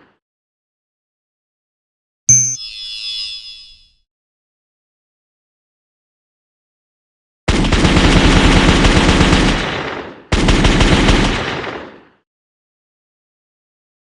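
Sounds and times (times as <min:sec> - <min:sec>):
machine-gun fire bursts: 0:07.5 - 0:12.2.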